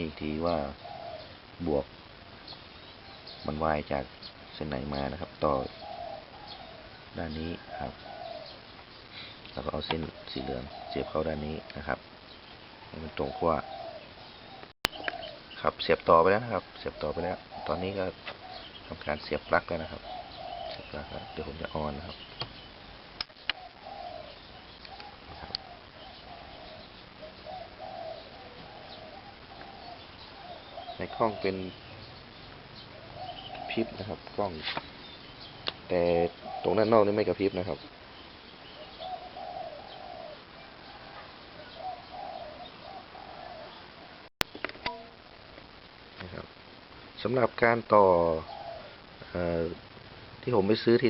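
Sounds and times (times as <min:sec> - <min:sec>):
dove cooing: 0:00.0 - 0:01.8, 0:04.6 - 0:08.8, 0:09.6 - 0:12.0, 0:12.7 - 0:22.7, 0:23.4 - 0:44.3, 0:48.2 - 0:49.5
steady background hiss: 0:00.0 - 0:51.0.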